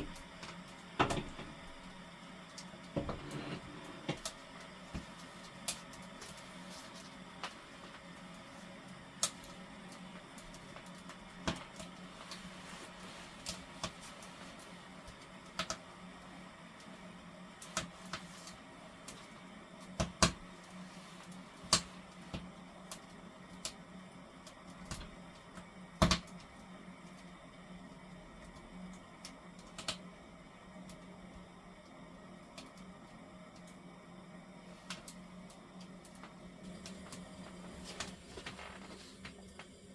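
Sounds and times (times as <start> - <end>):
low steady hum: 0.0 - 39.9
firewood crackling and popping: 3.9 - 27.3.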